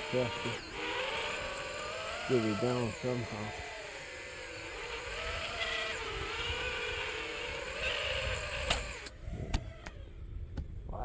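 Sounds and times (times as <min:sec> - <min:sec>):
drone motors whining: 0:00.0 - 0:11.0
wind rumble on microphone: 0:05.0 - 0:11.0.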